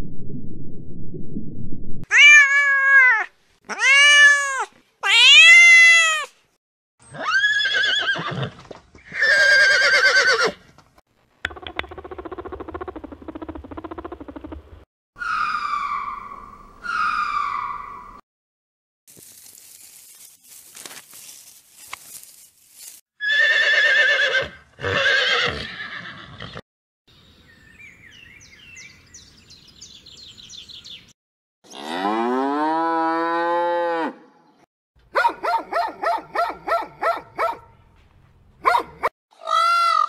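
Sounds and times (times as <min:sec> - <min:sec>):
animal calls: 0:15.2 - 0:18.2
cow mooing: 0:31.7 - 0:34.2.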